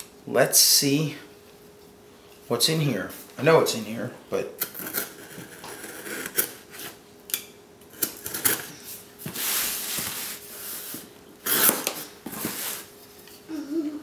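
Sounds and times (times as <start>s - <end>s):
box cutter scraping cardboard: 4.8s - 7.0s, 11.4s - 12.9s.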